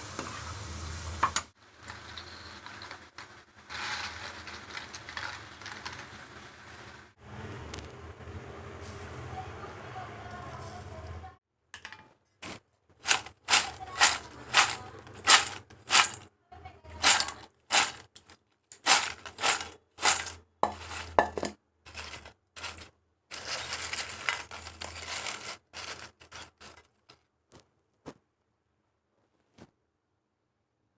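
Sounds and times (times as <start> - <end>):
potato chips crunching: 12.4 - 16.2, 17.0 - 21.2, 21.9 - 27.1.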